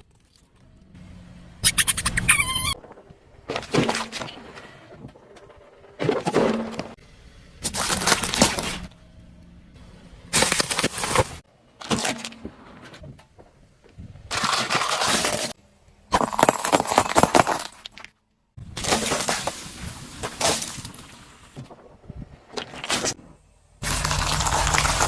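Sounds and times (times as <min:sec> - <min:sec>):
objects crunching under car tyre: 0:07.6 - 0:08.9, 0:10.3 - 0:13.5, 0:14.2 - 0:23.2, 0:23.8 - 0:25.0.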